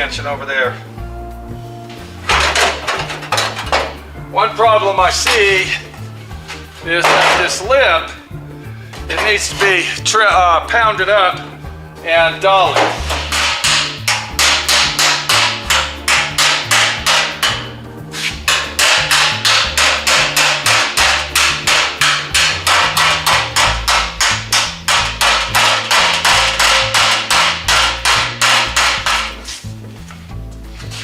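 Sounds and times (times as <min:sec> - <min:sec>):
hammer striking sheet metal: 0:02.3 - 0:04.0, 0:07.0 - 0:07.7, 0:09.1 - 0:09.9, 0:12.6 - 0:29.6.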